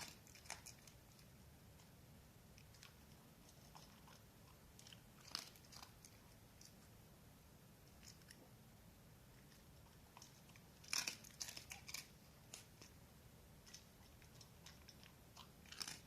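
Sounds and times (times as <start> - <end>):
dog chewing food: 0.0 - 1.9, 2.6 - 6.9, 9.4 - 13.0, 13.6 - 16.0.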